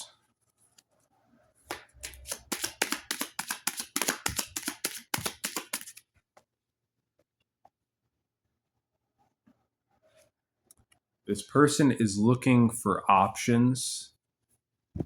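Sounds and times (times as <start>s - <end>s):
cards being shuffled: 1.7s - 6.0s.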